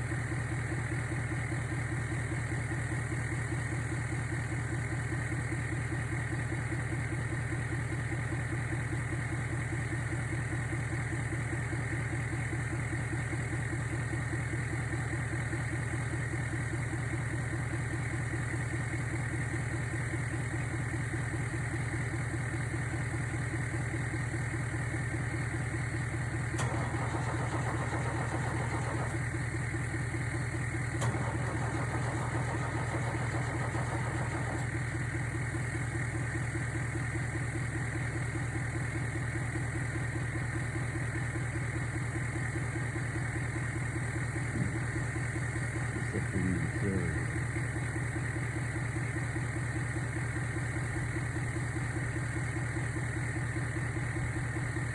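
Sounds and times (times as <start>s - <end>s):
motor running with fast pulse: 26.6s - 29.4s, 30.9s - 35.1s.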